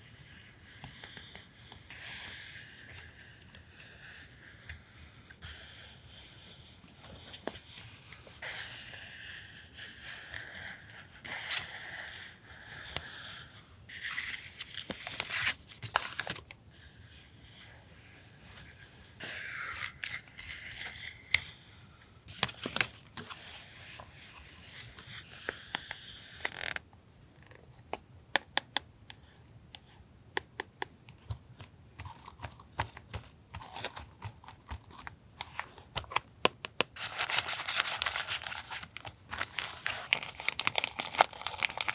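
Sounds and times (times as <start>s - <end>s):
paper rustling and sliding: 37.0s - 41.9s.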